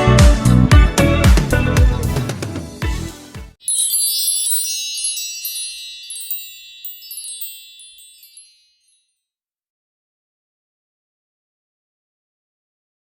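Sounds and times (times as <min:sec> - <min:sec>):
wind chime tinkling: 0:03.6 - 0:09.1.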